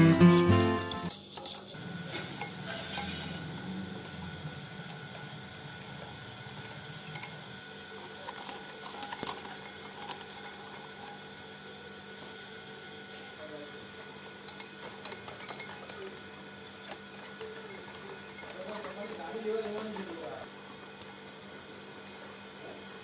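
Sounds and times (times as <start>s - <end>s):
utensils clinking against dishes: 0.0s - 4.2s, 14.1s - 20.5s.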